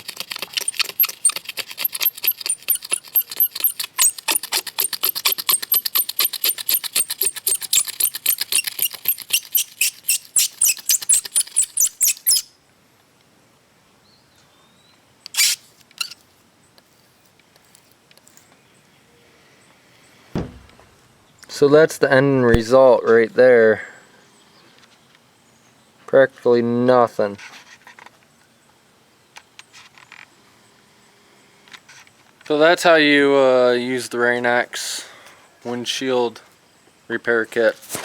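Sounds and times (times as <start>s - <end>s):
razor blade scraping glass: 0.0s - 12.5s, 15.3s - 16.2s.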